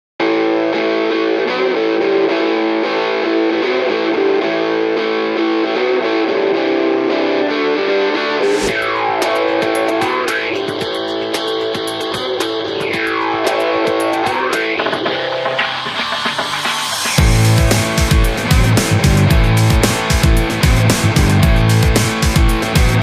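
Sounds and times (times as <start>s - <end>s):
rock music with distorted guitar: 0.2s - 23.0s
sweeping pitch effect: 8.4s - 11.6s.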